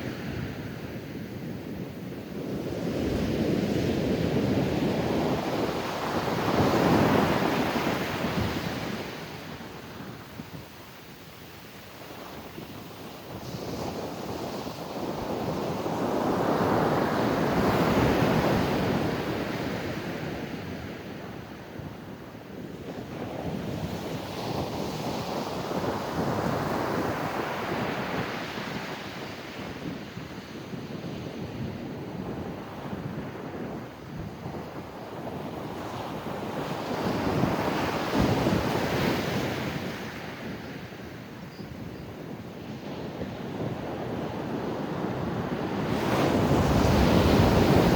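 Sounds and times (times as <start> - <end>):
wind rumble on microphone: 0.0 - 47.9
ocean waves crashing on beach: 42.5 - 47.9.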